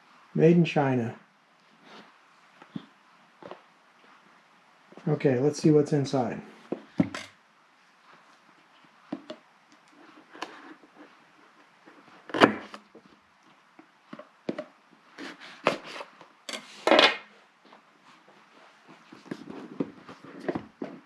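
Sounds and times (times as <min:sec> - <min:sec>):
cardboard packaging scraping and rustling: 0:09.9 - 0:13.1, 0:15.2 - 0:17.3.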